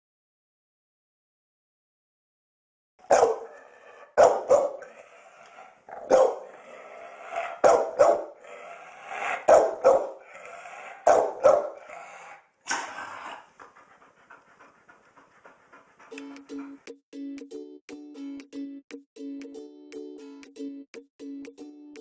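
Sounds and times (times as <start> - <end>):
dog barking loudly: 3.0 - 13.4.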